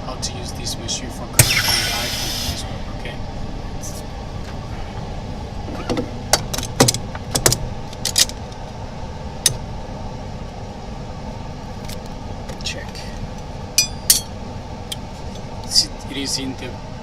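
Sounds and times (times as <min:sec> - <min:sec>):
low hum: 0:01.2 - 0:06.3.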